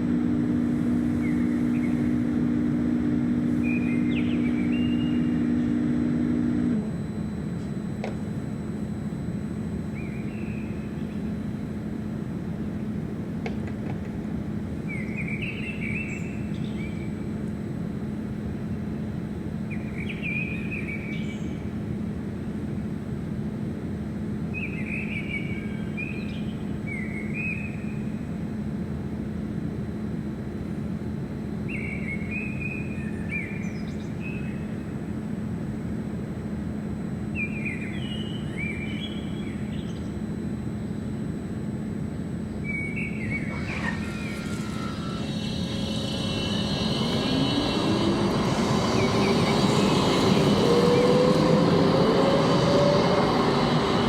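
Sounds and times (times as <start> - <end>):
low rumble and hum: 0.0 - 54.0
songbird singing: 3.6 - 5.4, 42.6 - 47.3
rising noise: 43.2 - 54.0.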